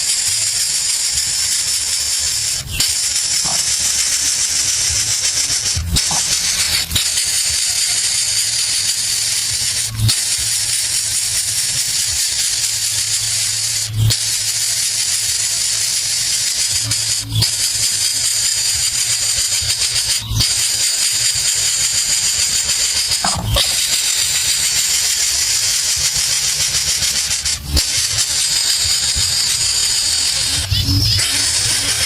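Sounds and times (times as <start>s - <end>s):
high-pitched hiss: 0.0s - 17.2s.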